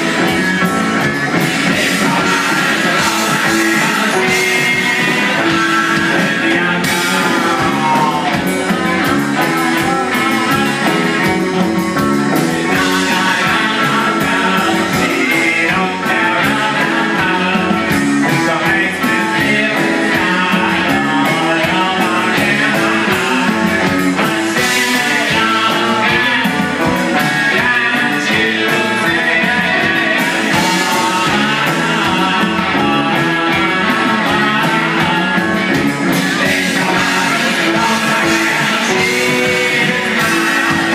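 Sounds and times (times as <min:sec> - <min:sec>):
electric guitar: 0:00.0 - 0:40.9
live rock band playing: 0:00.0 - 0:40.9
person singing: 0:00.0 - 0:40.9.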